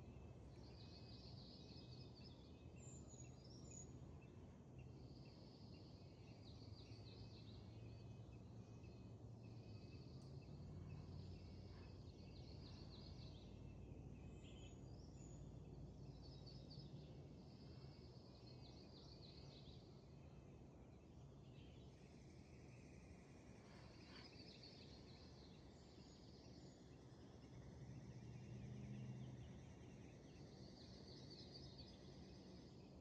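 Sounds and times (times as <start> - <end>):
songbird trilling song: 0.0 - 33.0
low steady rumble: 2.2 - 18.9.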